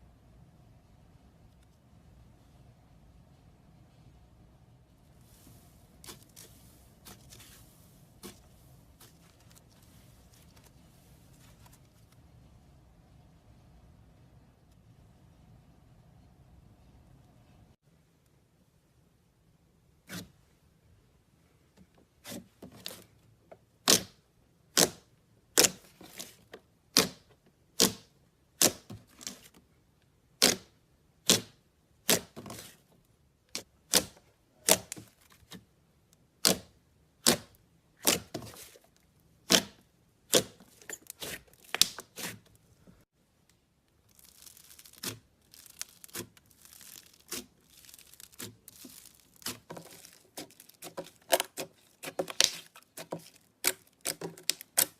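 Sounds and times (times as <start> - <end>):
slime popping and crackling: 44.0 - 54.9.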